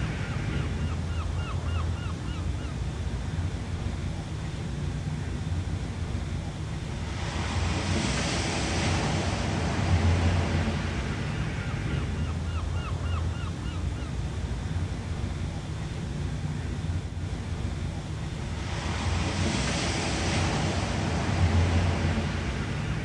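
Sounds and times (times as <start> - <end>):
ocean surf washing: 0.0 - 23.0
wave breaking: 7.0 - 12.5, 18.2 - 23.0.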